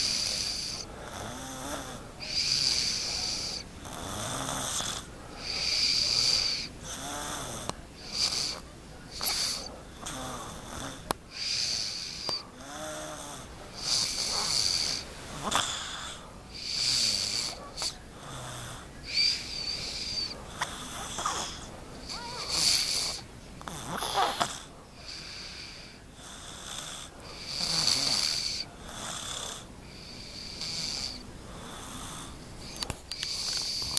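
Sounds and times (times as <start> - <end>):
girl snoring wheezily: 19.1 - 24.6.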